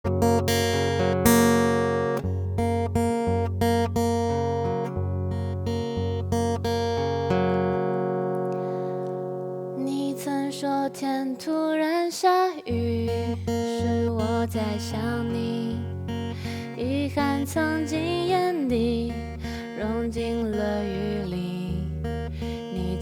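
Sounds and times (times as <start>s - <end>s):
acoustic guitar strumming chords: 0.0s - 11.9s, 12.7s - 23.0s.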